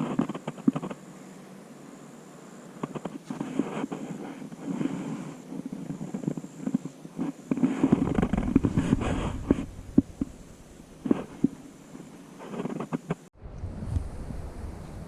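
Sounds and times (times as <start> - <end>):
low rumble: 8.0 - 11.6.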